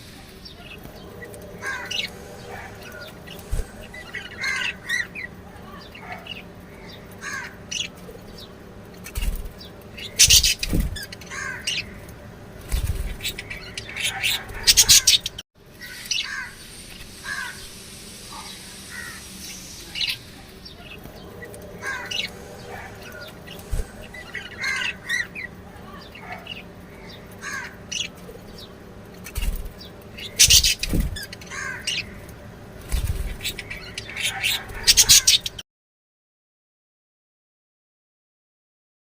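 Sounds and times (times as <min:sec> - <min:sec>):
bird squawking: 0:00.0 - 0:08.0, 0:10.0 - 0:12.1, 0:12.8 - 0:28.2, 0:30.2 - 0:32.3, 0:33.3 - 0:35.6
birds chirping: 0:00.0 - 0:35.6.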